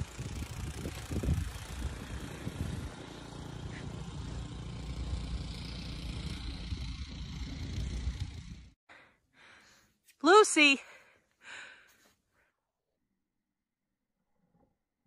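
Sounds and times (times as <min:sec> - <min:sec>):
engine running with low rumble: 0:00.0 - 0:08.8.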